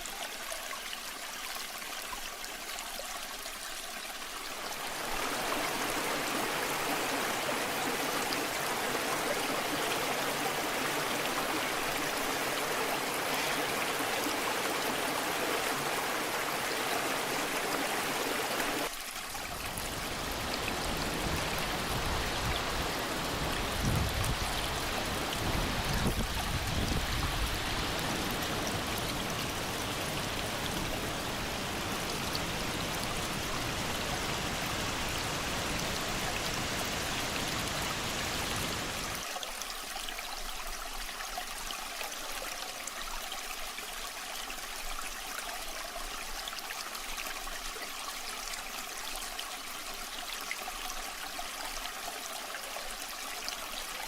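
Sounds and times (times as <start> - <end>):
waterfall rushing and splashing: 4.5 - 39.3.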